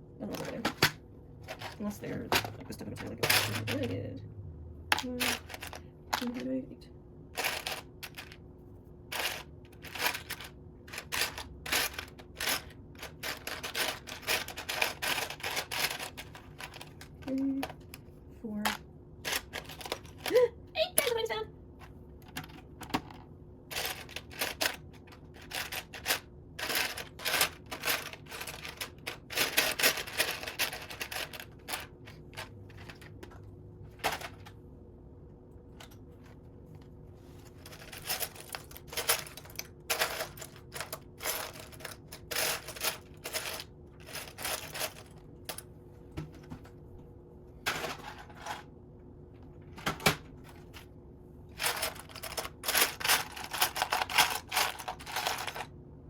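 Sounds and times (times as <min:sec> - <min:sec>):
plastic toy bricks clattering: 0:00.3 - 0:04.0, 0:04.9 - 0:06.5, 0:07.4 - 0:08.4, 0:09.1 - 0:17.8, 0:18.7 - 0:20.4, 0:23.7 - 0:33.3, 0:37.6 - 0:45.6, 0:51.6 - 0:55.7.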